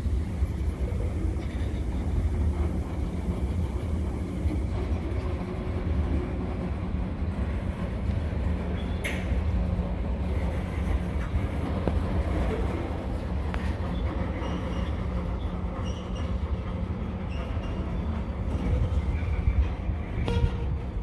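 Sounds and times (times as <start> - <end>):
freight train rumbling by: 0.0 - 21.0
wheels squeaking: 12.2 - 20.4.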